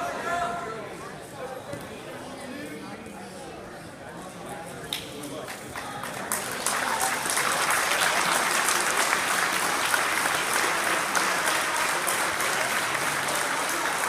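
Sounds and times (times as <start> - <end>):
crowd clapping and cheering: 5.2 - 14.0.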